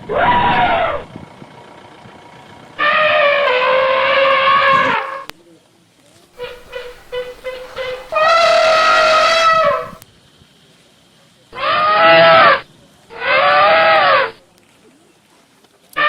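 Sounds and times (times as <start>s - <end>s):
elephant trumpeting: 0.0s - 1.1s, 2.8s - 5.3s, 6.4s - 10.0s, 11.6s - 14.4s.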